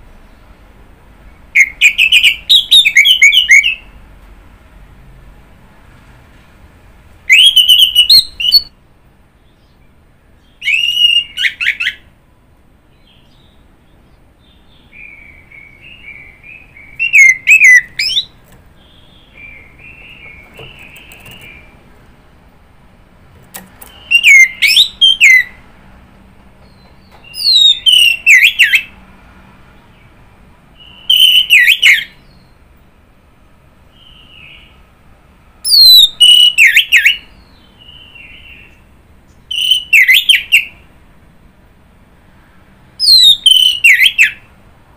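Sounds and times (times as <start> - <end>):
bird whistled song: 1.6 - 3.9, 7.3 - 8.7, 10.4 - 12.1, 14.4 - 21.7, 23.8 - 25.6, 26.7 - 28.9, 30.8 - 32.5, 35.6 - 40.8, 43.0 - 44.5
soft bird twittering: 12.9 - 21.9, 23.5 - 25.6, 26.6 - 28.9, 43.0 - 44.4.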